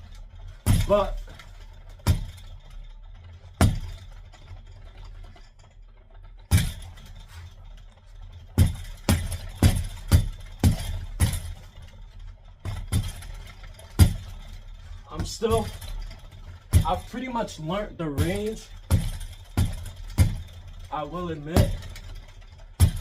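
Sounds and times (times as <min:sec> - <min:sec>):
boxing gloves punching ball: 0:00.6 - 0:02.5, 0:03.6 - 0:04.0, 0:06.5 - 0:07.2, 0:08.6 - 0:11.9, 0:12.6 - 0:14.5, 0:18.2 - 0:20.8, 0:22.8 - 0:23.0.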